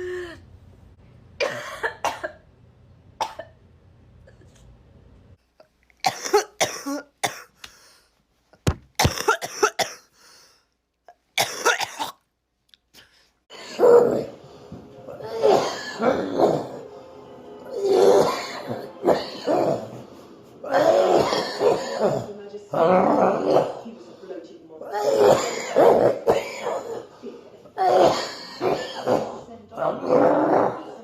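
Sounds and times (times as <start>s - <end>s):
low background hum: 0.0s - 8.6s
person coughing: 1.4s - 2.4s, 6.1s - 7.6s, 9.0s - 10.1s, 11.4s - 12.2s, 17.8s - 20.0s, 20.6s - 22.4s, 24.9s - 27.2s.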